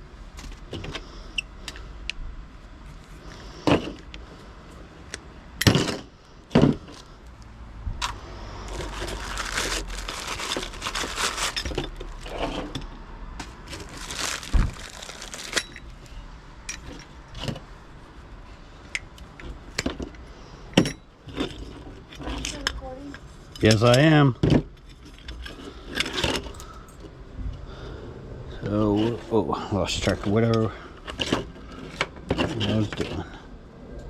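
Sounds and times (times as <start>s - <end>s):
scrap parts jangling and rustling: 5.6s - 7.2s, 8.0s - 16.1s, 16.7s - 17.6s, 18.9s - 27.1s, 29.9s - 33.4s.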